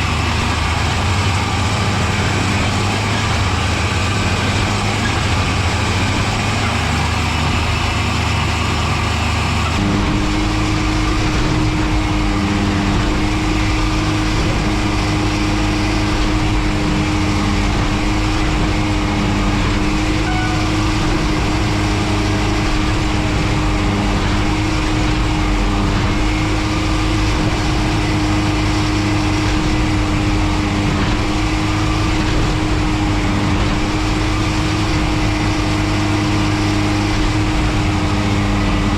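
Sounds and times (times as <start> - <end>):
machine engine running: 9.7 - 38.1.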